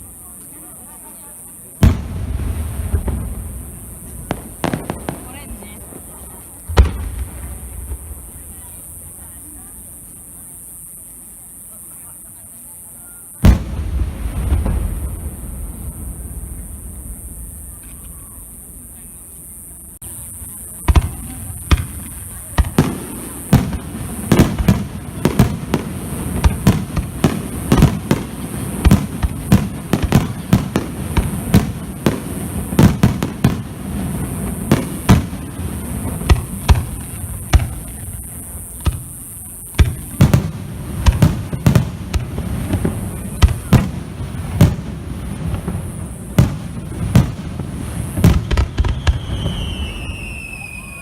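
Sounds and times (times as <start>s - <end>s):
fireworks booming: 0.8s - 10.5s, 13.4s - 51.0s.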